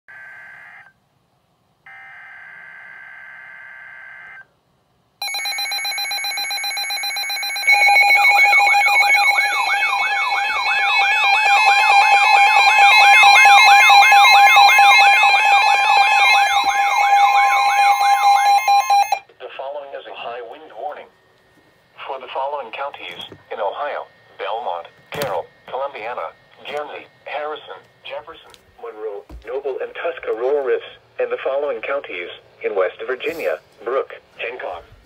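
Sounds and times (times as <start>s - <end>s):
loud steady attention tone: 5.2s - 32.6s.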